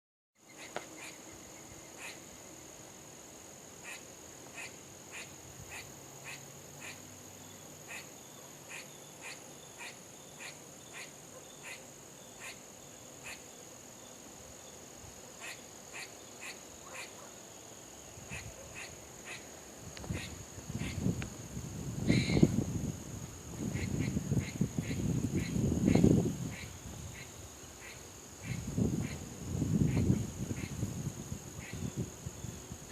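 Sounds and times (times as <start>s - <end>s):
squirrel barking alarm calls: 0.5s - 1.2s, 1.8s - 2.3s, 3.8s - 13.6s, 15.4s - 17.4s, 18.2s - 19.5s, 20.1s - 21.0s, 22.1s - 22.5s, 23.6s - 30.8s, 31.6s - 31.9s.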